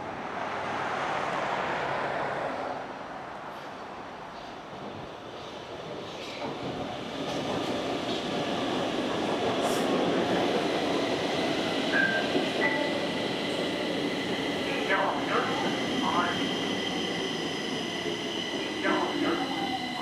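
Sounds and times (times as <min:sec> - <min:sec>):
metro train rolling: 0:00.0 - 0:20.0
short train squeal: 0:11.9 - 0:12.9.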